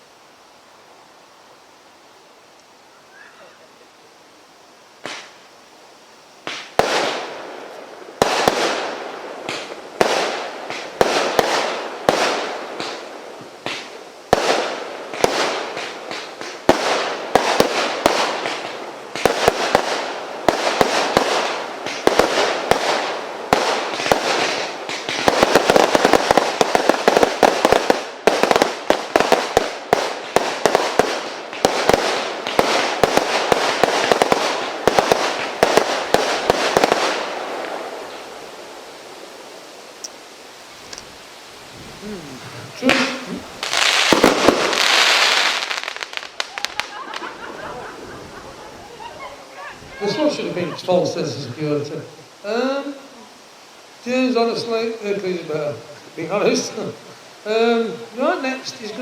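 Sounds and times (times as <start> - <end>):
firework shots with crackle: 5.0 - 5.4, 6.4 - 38.4, 42.7 - 47.4.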